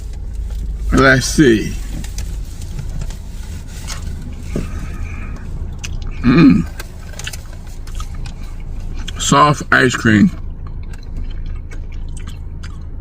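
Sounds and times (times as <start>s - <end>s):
steady low hum: 0.0s - 13.0s
quiet chewing: 1.8s - 9.3s, 10.2s - 13.0s
short vocal sound: 6.1s - 6.8s.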